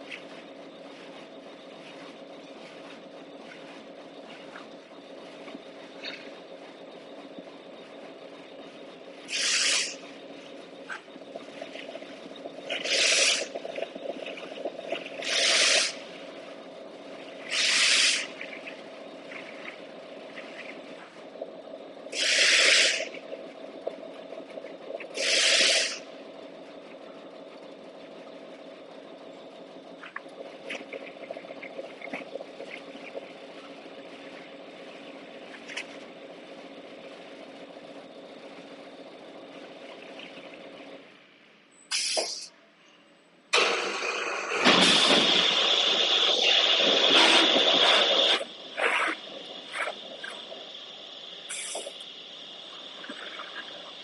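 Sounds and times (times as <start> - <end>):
machinery humming: 0.0 - 54.0
compressed-air hiss: 9.3 - 10.0, 12.8 - 13.5, 15.2 - 16.0, 17.5 - 18.3, 22.1 - 23.1, 25.2 - 26.0, 41.9 - 42.5, 43.6 - 54.0.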